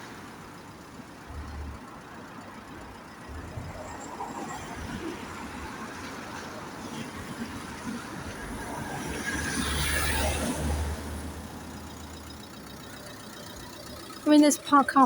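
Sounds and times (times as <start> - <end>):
vehicle passing by: 8.5 - 11.6.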